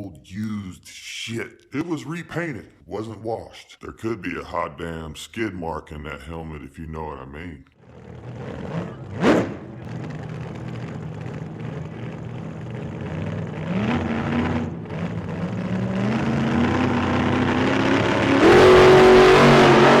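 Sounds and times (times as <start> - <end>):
car engine accelerating: 7.8 - 20.0.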